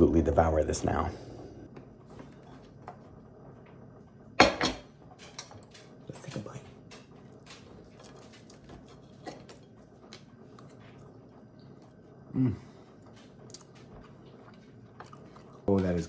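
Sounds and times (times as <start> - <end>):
cutlery clicking against plate: 4.4 - 8.4
soft chewing: 5.7 - 16.0
person humming: 12.3 - 12.7.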